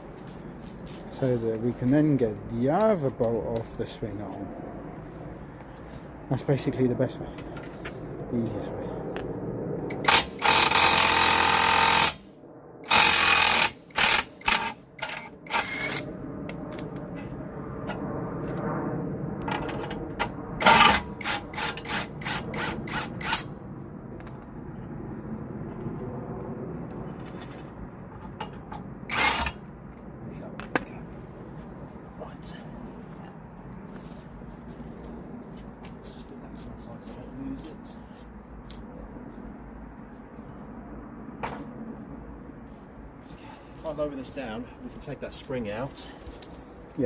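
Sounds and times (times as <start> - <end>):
impact wrench hammering: 10.0 - 12.2, 12.9 - 15.9, 20.6 - 23.4.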